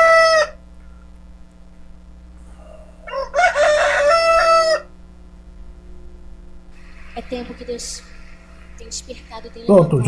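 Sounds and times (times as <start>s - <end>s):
rooster crowing: 0.0s - 0.6s, 2.4s - 5.0s
faint steady hum: 0.0s - 10.0s.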